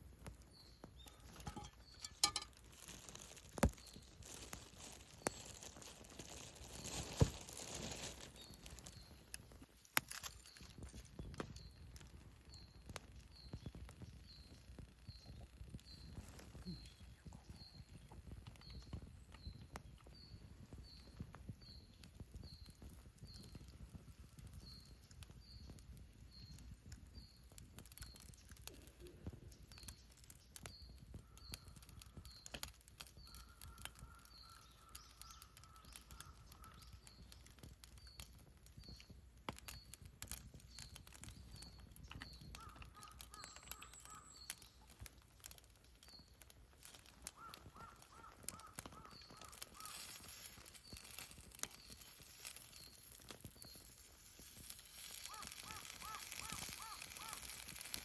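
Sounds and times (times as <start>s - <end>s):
campfire crackling: 0.0s - 58.0s
other bird calls: 41.6s - 45.0s, 46.8s - 53.9s, 55.0s - 57.7s.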